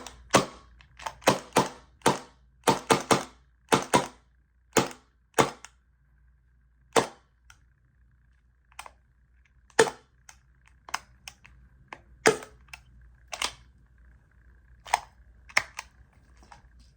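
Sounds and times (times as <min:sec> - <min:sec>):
airsoft pistol shots: 0:00.0 - 0:04.2, 0:04.8 - 0:05.6.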